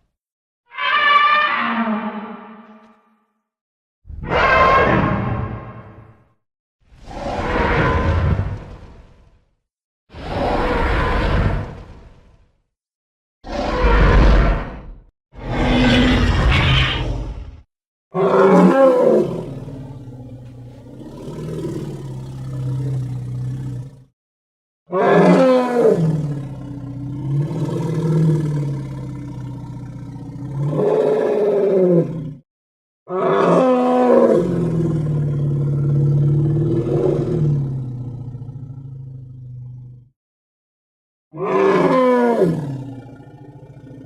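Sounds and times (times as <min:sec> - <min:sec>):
creature roar: 0:04.1 - 0:06.0, 0:13.5 - 0:14.8, 0:15.4 - 0:17.6, 0:18.2 - 0:20.1, 0:24.9 - 0:32.4, 0:33.1 - 0:38.5, 0:41.4 - 0:43.8.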